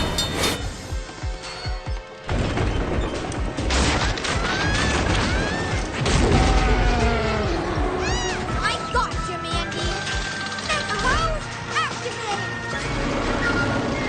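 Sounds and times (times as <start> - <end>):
action music: 0.0 - 4.3
cartoon crashing and rumbling: 2.3 - 7.7.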